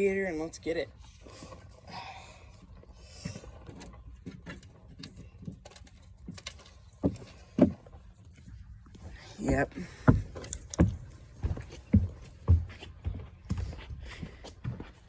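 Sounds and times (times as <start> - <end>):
fishing gear clicks and rattles: 2.6 - 7.6, 10.3 - 11.2.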